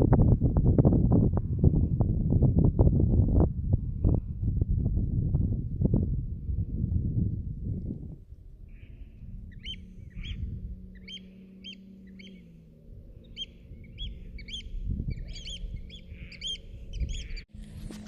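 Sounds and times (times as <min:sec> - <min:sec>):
low outdoor rumble: 0:00.0 - 0:18.0
bird chirping: 0:08.7 - 0:17.5.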